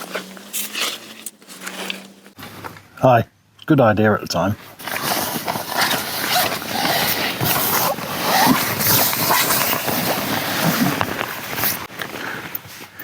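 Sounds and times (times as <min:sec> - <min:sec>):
rustling and knocking: 0:04.6 - 0:12.2.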